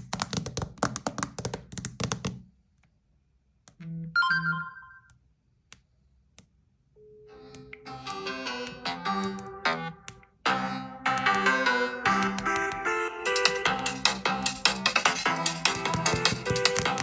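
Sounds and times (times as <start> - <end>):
phone buzzing: 4.1 - 5.1
electronic chime: 4.2 - 5.1
synthesized ringtone melody: 4.2 - 5.1
taps and knocks on phone: 15.7 - 17.0.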